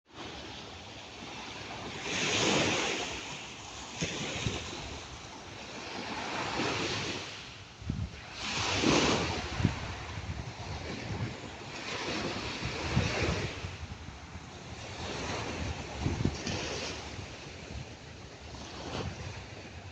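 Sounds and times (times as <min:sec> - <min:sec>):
waves breaking: 0:00.1 - 0:19.9
wind buffeting microphone: 0:06.5 - 0:19.9.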